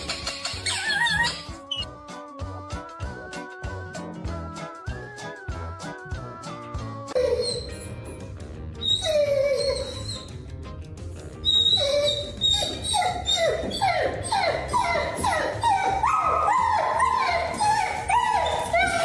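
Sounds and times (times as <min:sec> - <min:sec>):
background music: 0:00.0 - 0:19.0
dog yelping: 0:00.6 - 0:01.8, 0:07.2 - 0:08.1, 0:08.8 - 0:10.3, 0:11.4 - 0:19.0.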